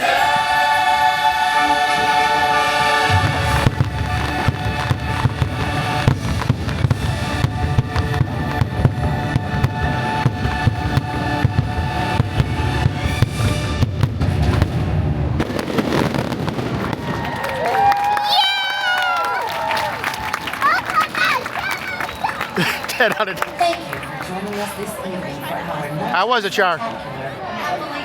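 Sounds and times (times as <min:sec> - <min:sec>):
orchestral music: 0:00.0 - 0:16.6
firework bursts and booms: 0:03.1 - 0:17.4.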